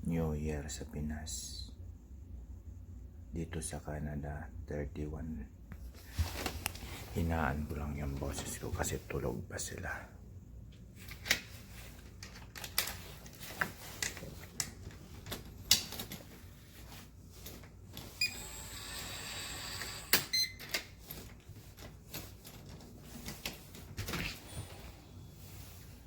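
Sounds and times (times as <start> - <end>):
faint high whine: 16.8 - 20.8.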